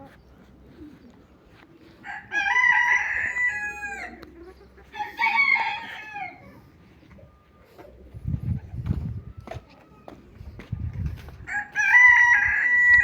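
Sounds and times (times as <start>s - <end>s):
rooster crowing: 2.0s - 4.2s, 4.9s - 6.5s, 11.5s - 13.0s.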